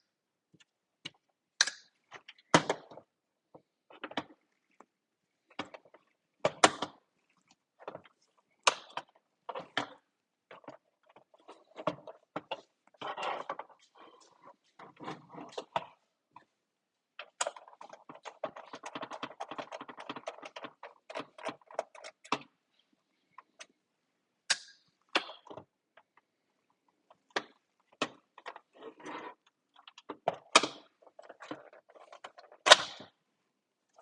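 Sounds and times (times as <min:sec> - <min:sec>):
plastic and metal parts rattling: 0:17.2 - 0:22.5, 0:26.9 - 0:33.1.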